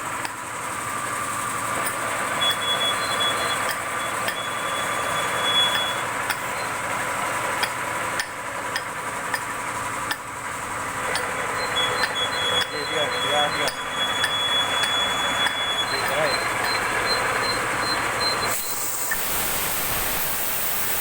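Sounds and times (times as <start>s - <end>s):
steady whine: 2.2s - 21.0s
plasma cutter arc hissing: 18.5s - 21.0s.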